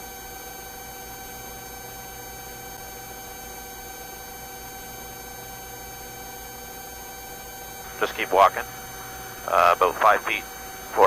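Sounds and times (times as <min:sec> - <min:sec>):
helicopter cabin hum: 0:07.6 - 0:11.0.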